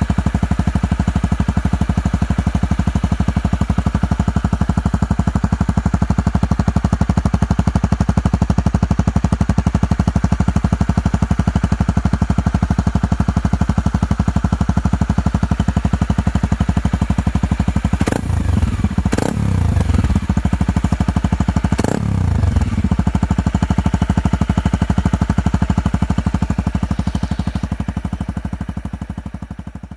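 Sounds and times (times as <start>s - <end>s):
motorcycle engine idling: 0.0s - 29.9s
engine throttle blips: 18.0s - 20.6s.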